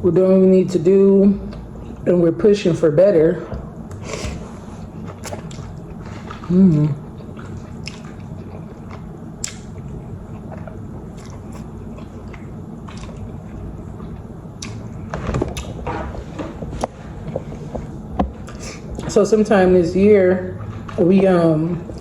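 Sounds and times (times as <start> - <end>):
person chewing food: 3.6 - 19.1
mouth clicks and smacks: 7.3 - 9.8, 10.5 - 13.2, 14.6 - 14.8.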